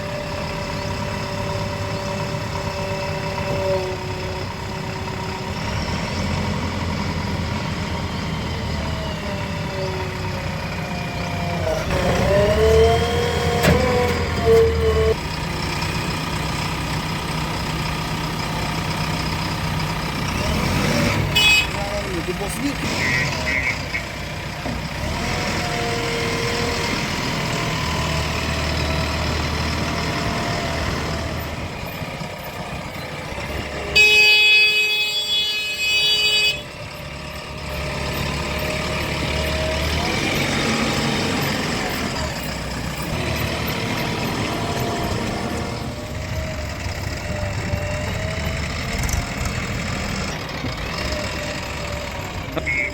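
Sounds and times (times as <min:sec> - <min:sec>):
diesel engine idling: 0:00.0 - 0:52.9
vehicle horn blaring: 0:21.3 - 0:21.8, 0:22.9 - 0:24.2, 0:33.8 - 0:36.8.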